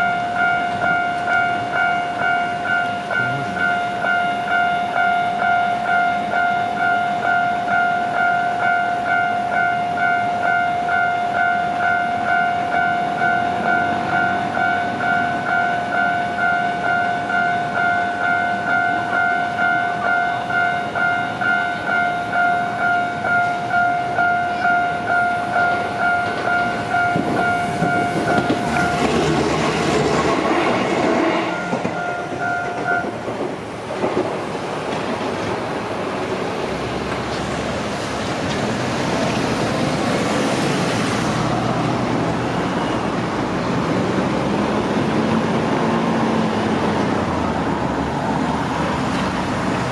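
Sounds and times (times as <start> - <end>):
level-crossing warning bell: 0.0 - 33.3, 41.5 - 43.7
train passing: 0.0 - 49.9.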